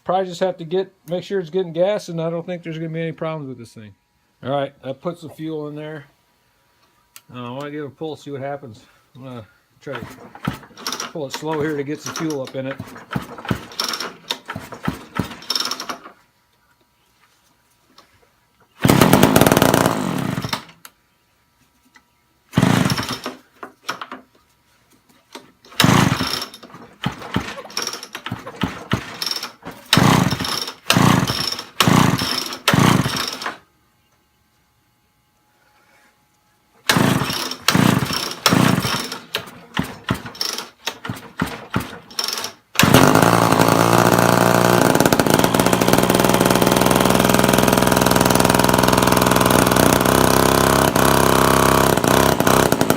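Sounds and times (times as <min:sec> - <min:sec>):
chainsaw recoil starter pulls: 0:09.8 - 0:16.2, 0:18.8 - 0:20.8, 0:22.5 - 0:24.2, 0:25.3 - 0:33.6, 0:36.8 - 0:52.9
chainsaw engine running: 0:09.9 - 0:16.1, 0:18.8 - 0:20.7, 0:22.5 - 0:23.5, 0:25.7 - 0:33.6, 0:36.8 - 0:52.9.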